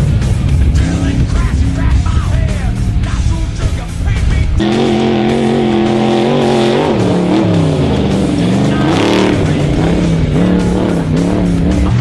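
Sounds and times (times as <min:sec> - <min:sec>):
background music: 0:00.0 - 0:12.0
race vehicle engine revving: 0:00.0 - 0:12.0.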